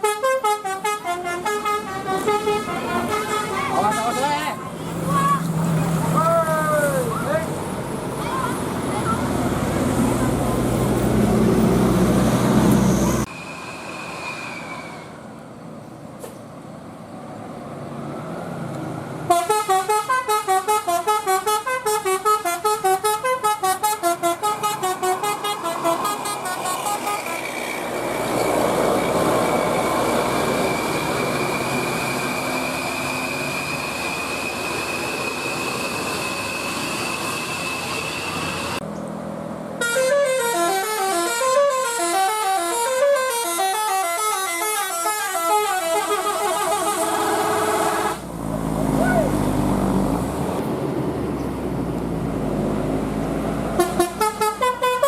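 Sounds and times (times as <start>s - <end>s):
musical bus horn melody: 0.0s - 4.6s, 19.3s - 27.6s, 39.8s - 48.3s, 53.7s - 55.0s
vehicle noise with high whine: 0.0s - 55.0s.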